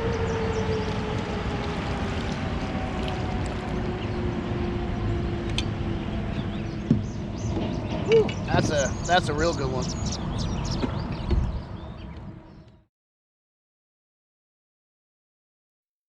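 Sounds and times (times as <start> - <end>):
wind and water noise: 0.0 - 12.6
boat motor humming: 0.0 - 12.7.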